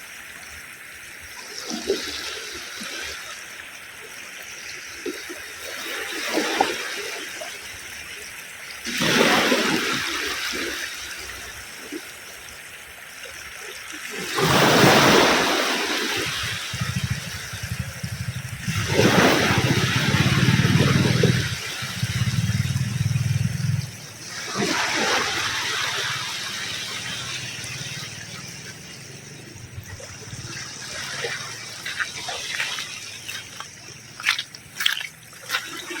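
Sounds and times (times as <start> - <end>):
sea water washing over shore: 0.0 - 36.0
water gurgling: 0.0 - 36.0
sharp water splashes: 1.2 - 36.0
ocean waves breaking: 8.8 - 12.4, 13.6 - 36.0.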